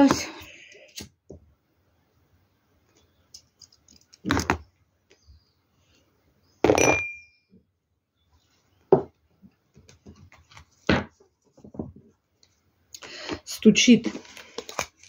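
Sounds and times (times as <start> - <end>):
glassy clink with ring: 6.7 - 7.5.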